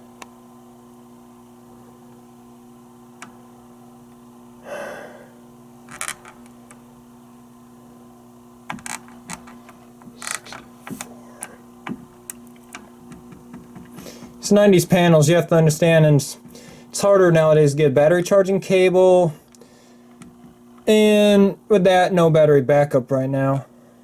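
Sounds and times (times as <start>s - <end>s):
low electrical hum: 0.0s - 24.0s
clicks and knocks on control panel: 11.8s - 14.0s.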